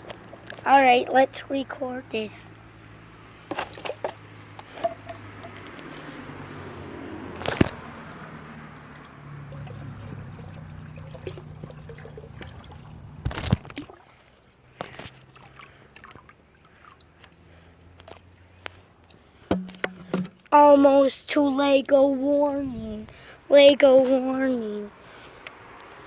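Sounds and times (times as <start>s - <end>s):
water pouring and trickling: 8.9s - 17.3s.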